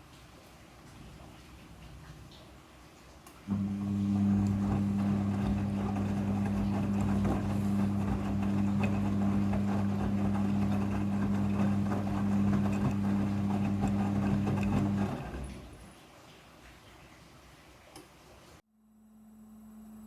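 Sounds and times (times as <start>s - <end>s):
rushing crackling water: 0.0s - 18.4s
washing machine electrical hum: 0.0s - 18.6s.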